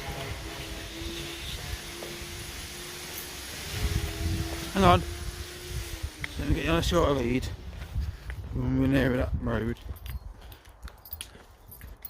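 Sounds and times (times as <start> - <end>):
footsteps on hard path: 0.0 - 12.0
wind rumble on microphone: 3.6 - 12.0.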